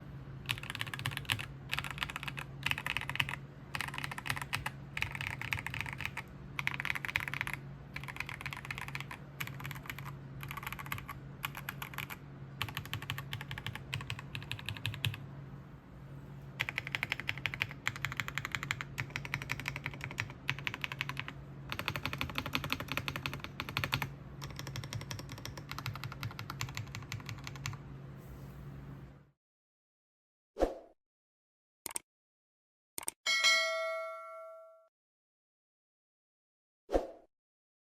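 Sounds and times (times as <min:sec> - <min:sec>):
steady low hum: 0:00.0 - 0:29.3
clacking mechanical keyboard typing: 0:00.4 - 0:15.2, 0:16.6 - 0:27.8.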